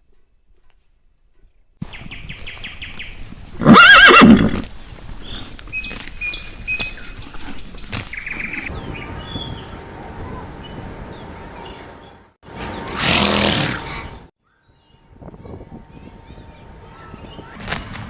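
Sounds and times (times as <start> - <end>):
horse whinnying: 3.6 - 4.6.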